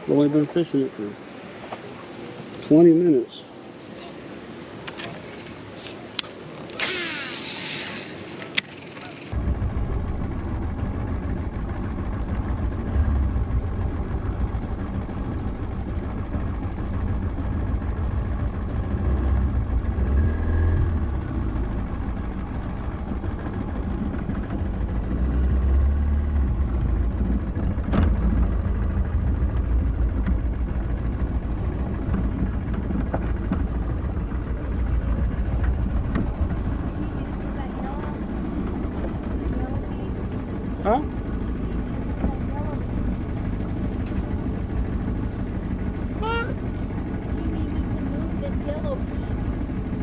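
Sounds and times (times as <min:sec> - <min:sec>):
wind buffeting microphone: 0:26.4 - 0:50.0.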